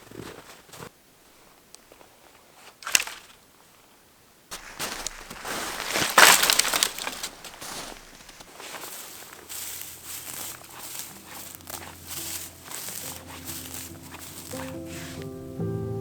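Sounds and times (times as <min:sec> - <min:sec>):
snow crunching and cracking: 0:04.5 - 0:15.6.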